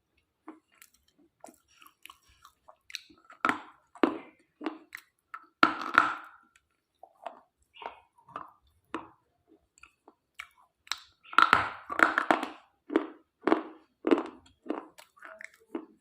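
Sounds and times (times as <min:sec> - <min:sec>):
chewing crunches: 0:00.4 - 0:16.0.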